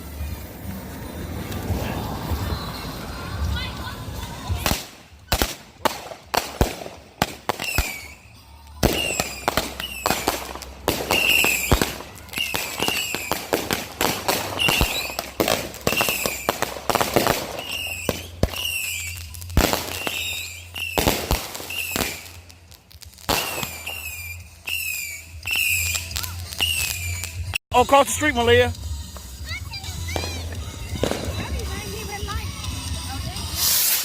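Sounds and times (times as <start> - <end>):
fireworks bangs and crackles: 0.0 - 34.0
high whistles dropping in pitch: 19.9 - 22.2, 23.4 - 27.4.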